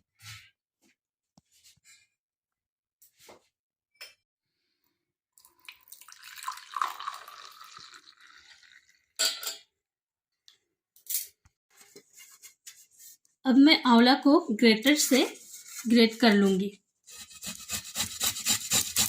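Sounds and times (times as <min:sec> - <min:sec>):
water pouring into a vessel: 0:05.4 - 0:09.2.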